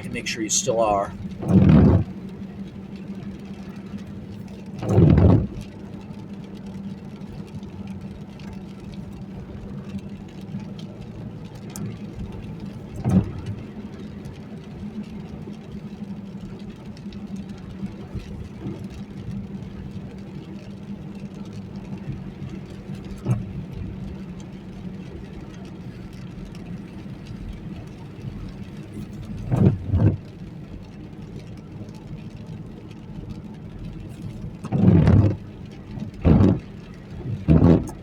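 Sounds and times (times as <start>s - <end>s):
car engine and road noise: 0.0s - 38.0s
windshield wipers knocking: 1.2s - 2.2s, 4.7s - 5.6s, 12.9s - 13.6s, 29.3s - 30.3s, 34.5s - 38.0s.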